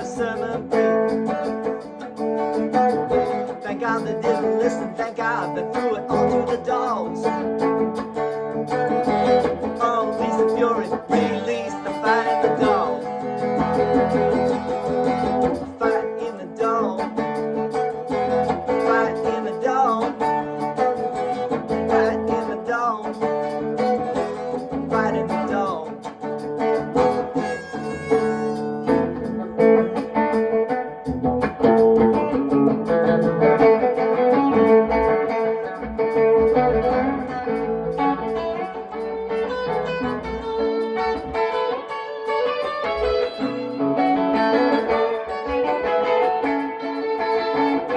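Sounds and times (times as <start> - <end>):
blues-rock guitar: 0.0 - 47.9.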